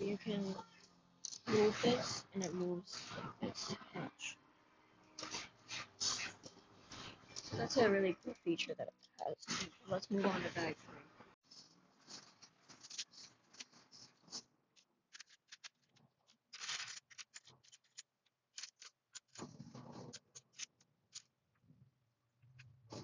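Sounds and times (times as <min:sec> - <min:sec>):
plastic pieces clicking: 0:15.1 - 0:19.4.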